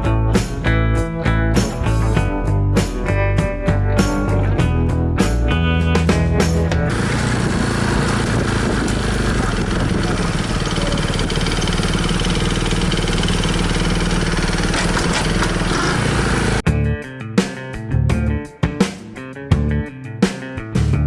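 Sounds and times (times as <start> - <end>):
motorcycle engine running: 6.2 - 16.7.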